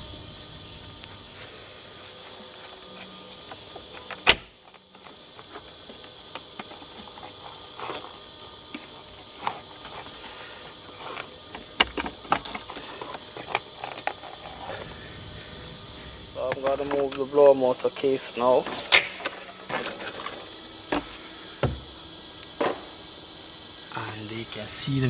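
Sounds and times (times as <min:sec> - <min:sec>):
hand tools and parts knocking: 0:08.7 - 0:14.7, 0:18.6 - 0:22.0.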